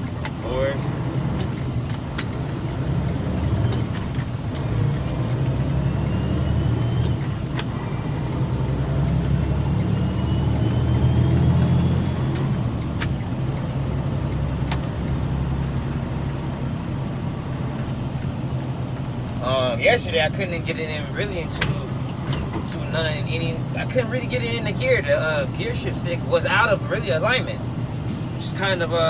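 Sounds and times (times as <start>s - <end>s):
truck diesel engine pulling: 0.0s - 29.0s.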